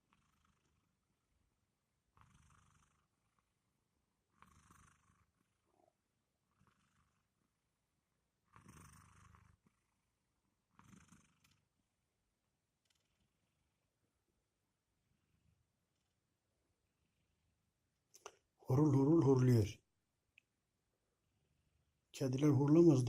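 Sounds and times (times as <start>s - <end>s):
cat snoring softly: 0.0s - 1.3s, 2.0s - 7.6s, 8.4s - 11.8s.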